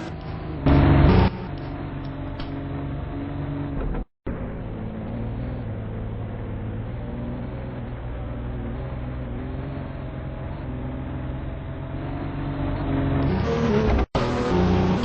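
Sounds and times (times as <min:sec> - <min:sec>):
car engine droning: 0:00.0 - 0:15.0.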